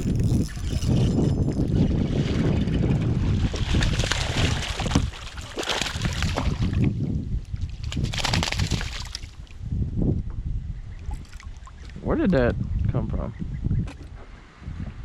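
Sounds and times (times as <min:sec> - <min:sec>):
water splashing: 0:00.0 - 0:07.0
wind buffeting microphone: 0:00.0 - 0:15.0.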